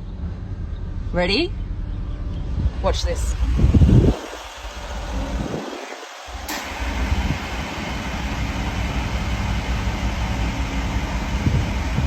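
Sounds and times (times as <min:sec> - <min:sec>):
low rumble: 0:00.0 - 0:12.0
loud steady air hiss: 0:03.3 - 0:12.0.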